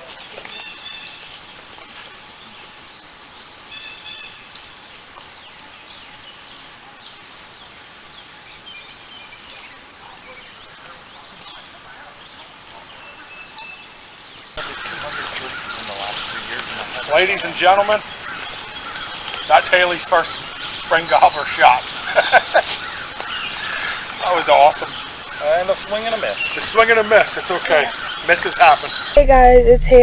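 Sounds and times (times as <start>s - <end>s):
songbirds chirping: 0.0s - 29.2s
steady outdoor hiss: 0.0s - 30.0s
faint clicks: 10.8s - 11.6s, 14.6s - 21.0s, 21.8s - 29.1s.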